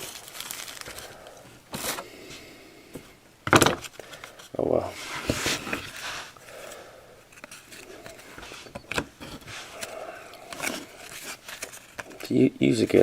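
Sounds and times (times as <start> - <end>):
card pack rustling and clicking: 0.0 - 2.0, 7.4 - 12.4.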